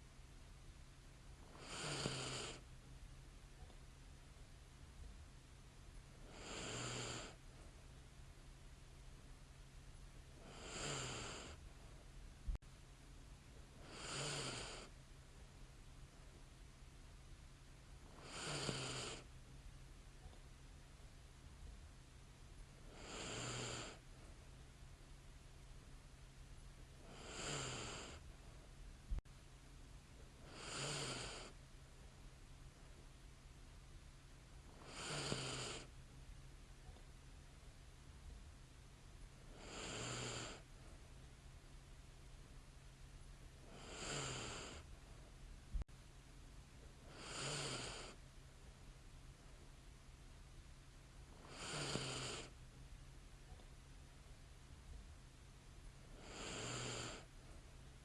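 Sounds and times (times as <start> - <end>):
woman breathing and snoring: 1.5 - 2.7, 6.2 - 7.8, 10.4 - 12.0, 13.7 - 15.0, 18.1 - 19.3, 22.8 - 24.4, 27.0 - 28.6, 30.4 - 31.6, 34.7 - 35.9, 39.4 - 41.0, 43.6 - 45.2, 47.0 - 48.2, 51.4 - 52.6, 56.1 - 57.7.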